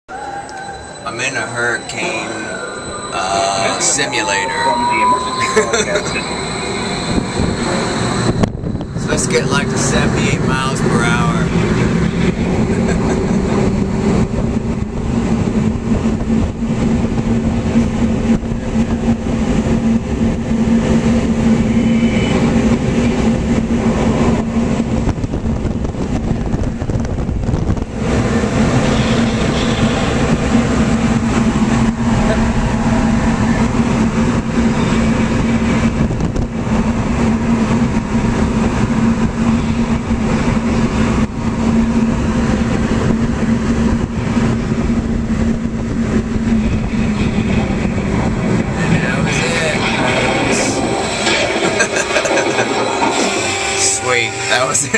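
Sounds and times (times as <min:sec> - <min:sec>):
wind buffeting microphone: 0:05.0 - 0:51.2
fan hum: 0:22.5 - 0:54.9.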